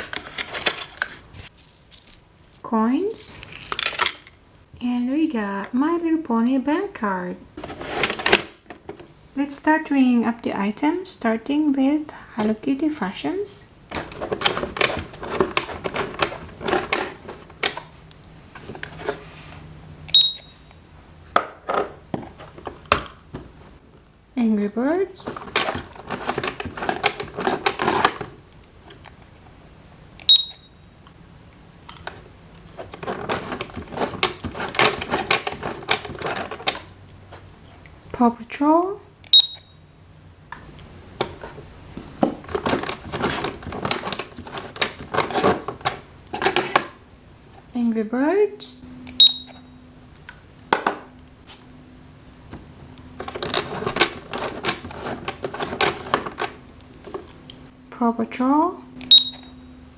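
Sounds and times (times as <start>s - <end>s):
plastic clicking and rustling: 0.0s - 1.2s, 13.9s - 17.9s, 25.3s - 29.2s, 31.8s - 36.9s, 40.5s - 47.0s, 52.5s - 57.5s
toy cash register beep: 20.1s - 20.7s, 30.3s - 30.8s, 39.3s - 39.8s, 49.2s - 49.8s, 59.1s - 59.8s.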